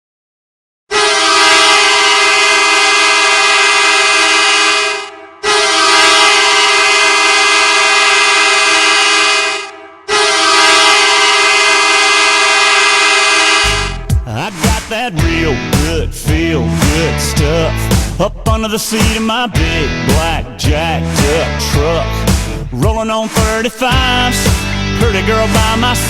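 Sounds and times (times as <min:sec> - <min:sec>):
goal horn blasts: 0:00.9 - 0:14.1.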